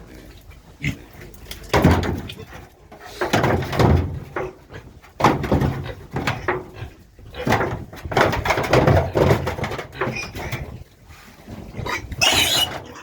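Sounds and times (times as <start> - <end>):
pigs calling loudly: 0.0 - 1.4, 11.6 - 13.0.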